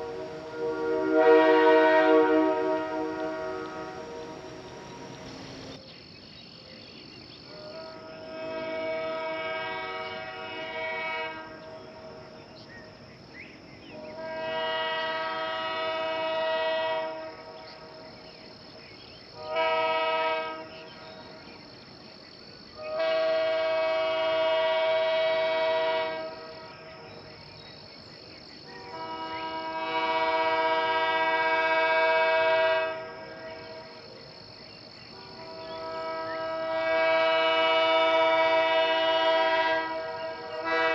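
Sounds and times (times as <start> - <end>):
train horn chord blasts: 0.0 - 5.8, 7.5 - 12.3, 13.9 - 18.0, 19.4 - 21.4, 22.8 - 27.1, 28.7 - 33.9, 35.1 - 40.9.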